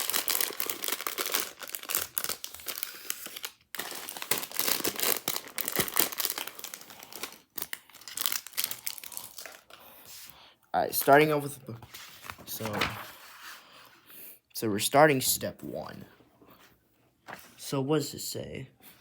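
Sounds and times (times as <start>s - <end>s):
plastic bags crinkling: 0.0s - 9.9s.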